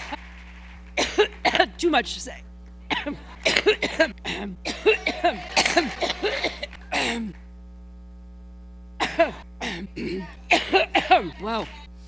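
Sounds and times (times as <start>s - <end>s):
steady electrical hum: 0.0s - 12.0s
woman coughing: 1.0s - 1.9s, 2.9s - 7.4s, 9.0s - 11.8s.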